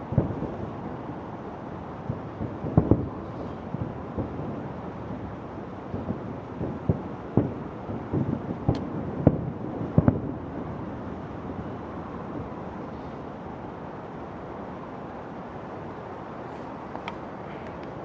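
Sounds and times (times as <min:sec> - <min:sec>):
fireworks exploding: 0:02.1 - 0:04.6, 0:05.9 - 0:10.5.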